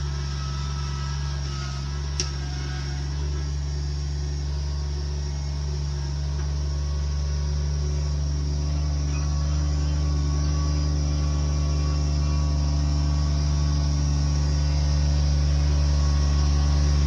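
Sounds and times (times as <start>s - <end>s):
engine low hum: 0.0s - 17.0s.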